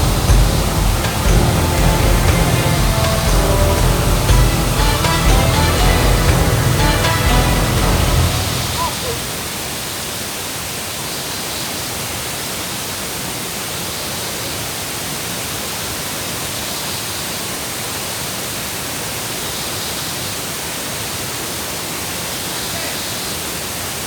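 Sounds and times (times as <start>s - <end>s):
water rushing: 0.0s - 13.8s.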